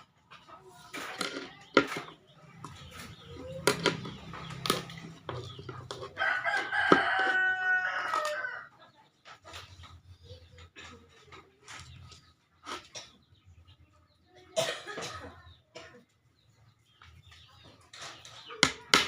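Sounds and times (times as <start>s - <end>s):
rooster crowing: 6.2s - 8.7s.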